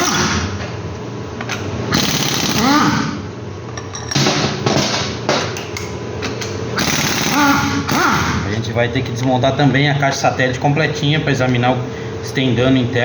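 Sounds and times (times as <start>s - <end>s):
impact wrench hammering: 0.0s - 0.4s, 1.9s - 3.2s, 4.0s - 8.5s
steady mechanical hum: 0.0s - 13.0s.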